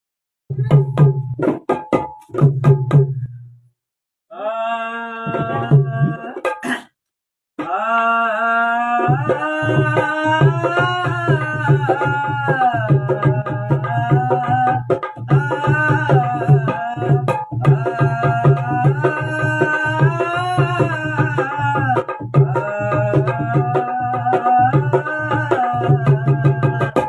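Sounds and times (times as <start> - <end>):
tabla strokes: 0.5 - 3.6, 8.8 - 27.0
person singing long sliding notes: 4.3 - 6.4, 7.6 - 14.8.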